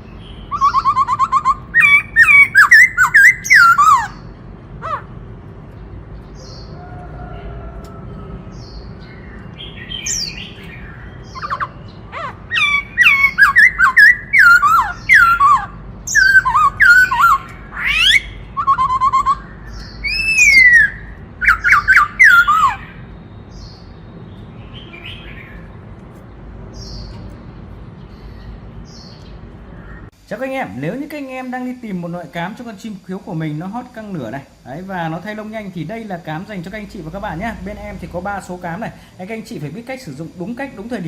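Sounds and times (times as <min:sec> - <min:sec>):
faint soft bird calls: 0:00.0 - 0:05.1
bird singing whistled phrases: 0:00.3 - 0:04.2, 0:09.6 - 0:11.9, 0:12.5 - 0:23.0.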